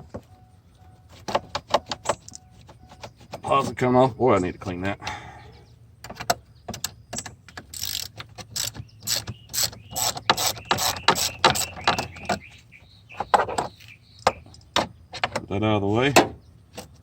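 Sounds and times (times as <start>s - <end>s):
socket ratchet clicking: 7.6s - 11.6s.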